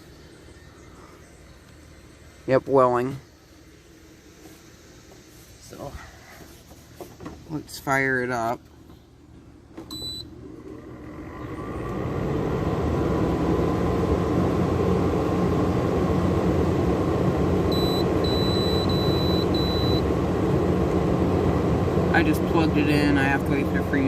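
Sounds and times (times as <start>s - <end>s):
air conditioner fan rushing air: 0.0s - 24.0s
short electronic beeps: 17.7s - 20.0s.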